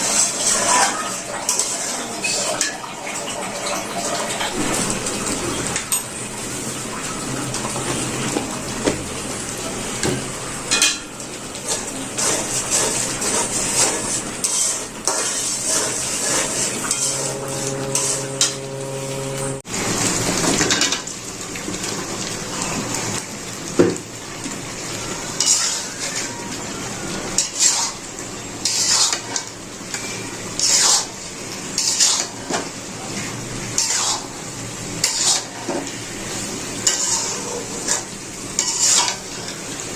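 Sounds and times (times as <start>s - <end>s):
food frying hiss: 0.0s - 39.9s
steady hum: 4.4s - 9.2s, 16.2s - 19.7s
metal spoon scraping a pan: 11.7s - 19.6s, 25.4s - 26.3s, 27.4s - 28.0s, 28.6s - 31.2s, 31.8s - 32.4s, 33.8s - 34.4s, 35.0s - 35.8s, 36.8s - 39.6s.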